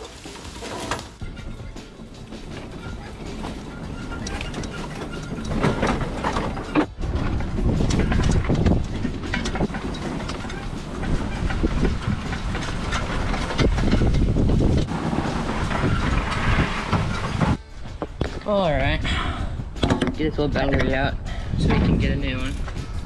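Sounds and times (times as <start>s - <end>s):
loud rattling and clattering: 0.3s - 18.4s.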